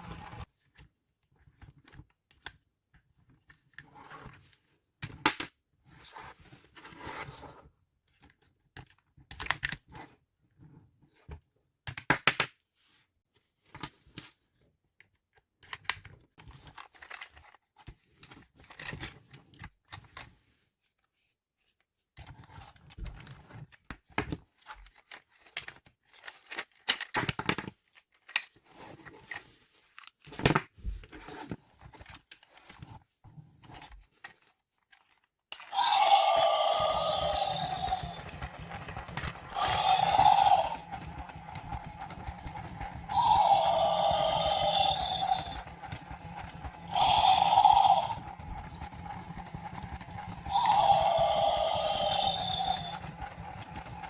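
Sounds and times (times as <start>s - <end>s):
toy parts clicking: 35.5s - 54.0s.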